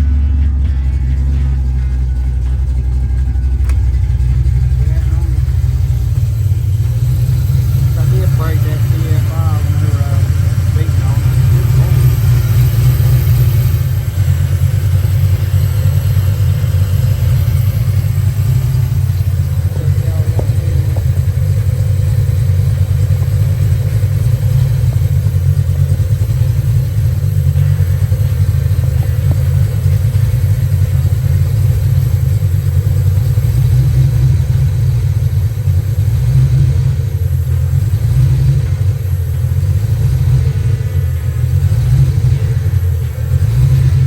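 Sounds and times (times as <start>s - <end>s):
car engine with low exhaust rumble: 0.0s - 44.0s.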